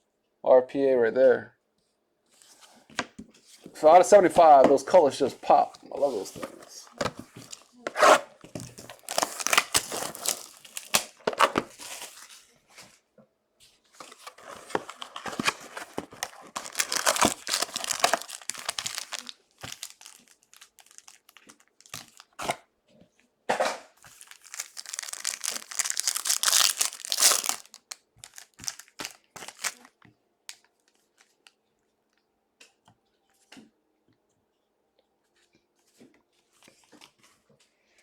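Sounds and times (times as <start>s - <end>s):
packaging crinkling and rustling: 5.5s - 12.5s, 13.9s - 22.6s, 24.0s - 31.6s.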